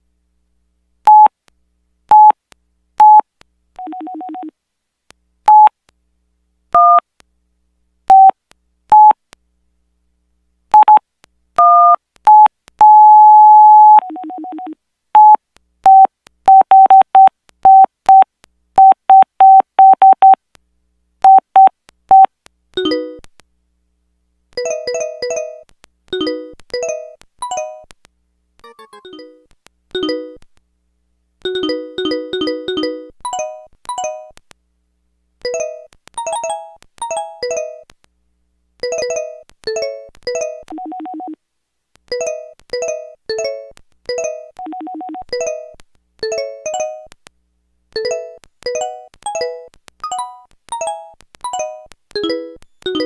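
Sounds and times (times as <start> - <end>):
phone keypad beeps: 1.1 - 1.3, 2.1 - 2.4, 3.0 - 3.2, 5.5 - 5.7, 8.1 - 8.3, 8.9 - 9.2, 10.8 - 11.0, 11.6 - 14.6, 15.2 - 18.2, 18.8 - 20.4, 21.3 - 22.3, 40.7 - 41.4, 44.6 - 45.4
melodic ringtone: 22.8 - 23.2, 24.6 - 25.6, 26.2 - 27.8, 28.6 - 30.4, 31.5 - 34.3, 35.5 - 37.8, 38.8 - 41.4, 42.2 - 47.1, 48.0 - 53.0.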